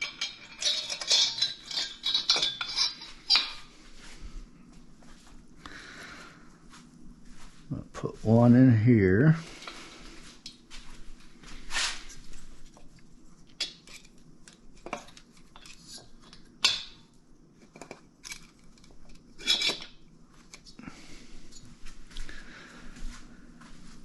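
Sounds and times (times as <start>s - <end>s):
feeler gauge leaves clinking: 0.0s - 3.7s.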